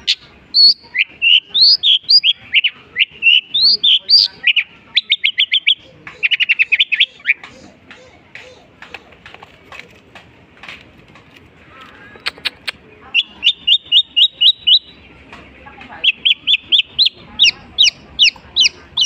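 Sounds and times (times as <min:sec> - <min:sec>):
bird singing sharp chirps: 0:00.0 - 0:07.4, 0:13.1 - 0:15.1, 0:16.0 - 0:19.0.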